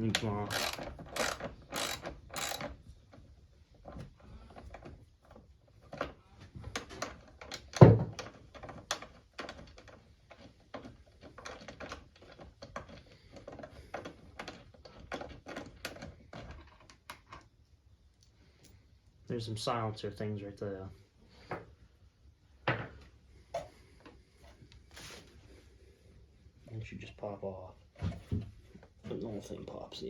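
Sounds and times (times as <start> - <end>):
socket ratchet clicking: 0.1 - 2.7.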